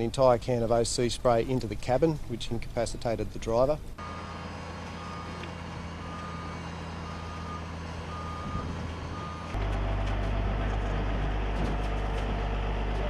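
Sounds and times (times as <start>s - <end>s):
bulldozer engine running: 3.8s - 13.0s
reversing alarm beeping: 4.0s - 9.6s.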